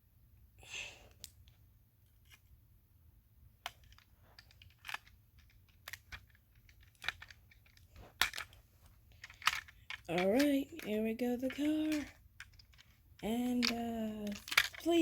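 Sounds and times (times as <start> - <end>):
toy parts clicking and tapping: 3.6 - 15.0.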